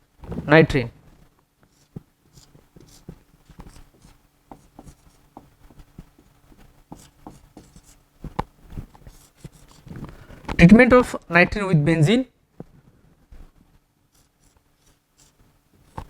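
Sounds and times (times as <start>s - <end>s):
faint steady hum: 0.0s - 16.0s
pen scratching and tapping: 1.7s - 10.2s, 14.1s - 16.0s.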